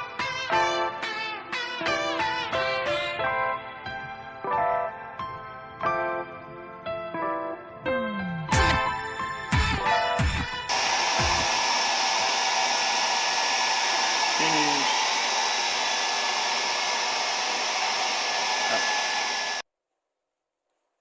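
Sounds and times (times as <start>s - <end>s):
hair dryer blowing with whistle: 10.2s - 19.6s.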